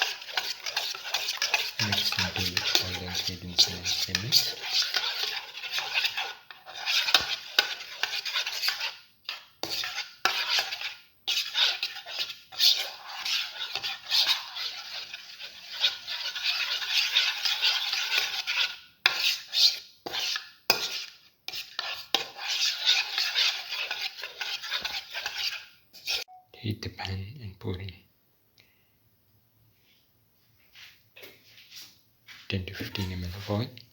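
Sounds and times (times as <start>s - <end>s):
whisking egg in bowl: 0.0s - 26.3s.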